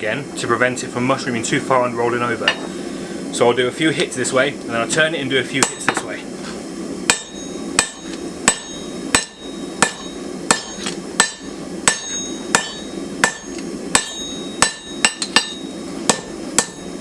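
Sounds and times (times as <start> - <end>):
hammer striking steel on anvil: 5.6 - 6.1, 7.1 - 17.0.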